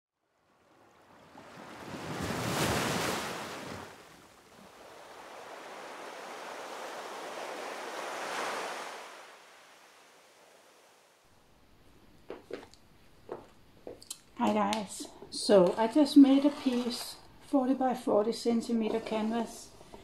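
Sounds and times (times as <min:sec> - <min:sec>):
waves washing in: 0:00.4 - 0:11.2.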